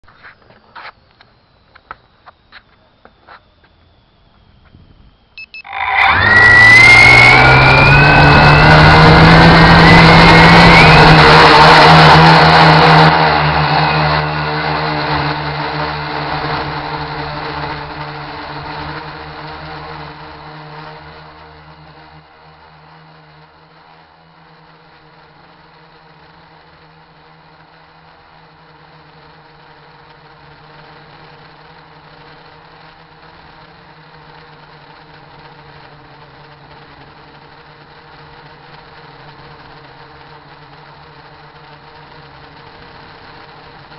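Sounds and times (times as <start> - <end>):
quadcopter motors whirring: 0.0 - 43.9
wind noise on microphone: 4.3 - 5.3.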